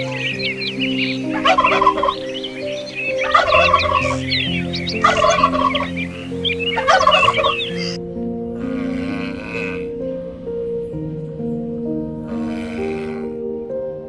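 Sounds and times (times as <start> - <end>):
fowl warbling calls: 0.0 - 8.0
small birds chirping: 0.0 - 8.0
soft background music: 0.0 - 14.0.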